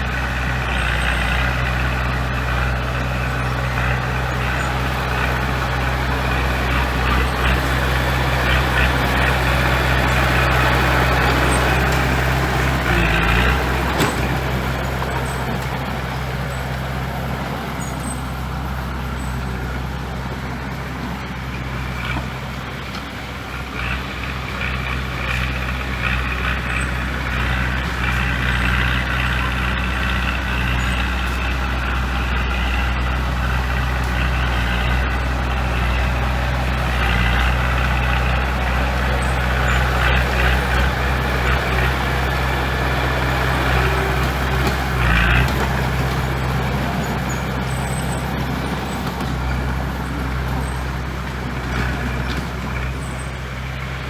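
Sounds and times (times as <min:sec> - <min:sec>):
diesel engine drone: 0:00.0 - 0:54.0
machinery rattling and clattering: 0:00.2 - 0:54.0.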